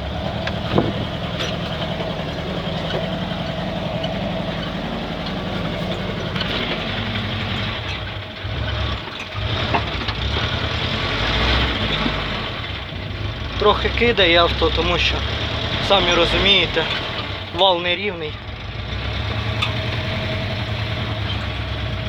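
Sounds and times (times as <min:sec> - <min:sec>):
sharp knocks: 0:00.0 - 0:08.2
engine running at low speed: 0:00.0 - 0:22.0.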